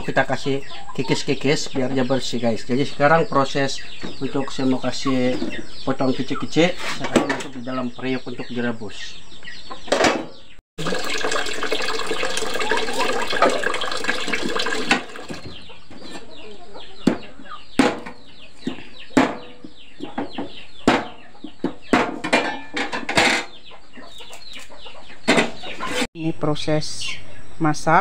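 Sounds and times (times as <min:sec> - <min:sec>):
chickens clucking: 0:00.0 - 0:10.6, 0:11.6 - 0:26.1
water running: 0:10.8 - 0:15.4.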